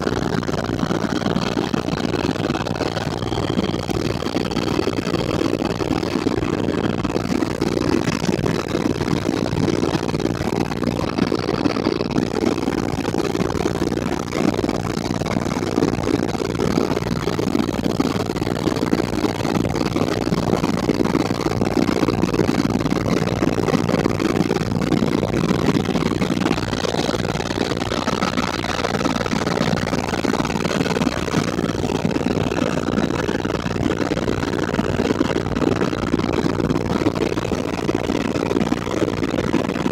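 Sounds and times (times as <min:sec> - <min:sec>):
faint whine: 0:00.0 - 0:21.4
helicopter cabin rotor noise: 0:00.0 - 0:39.9.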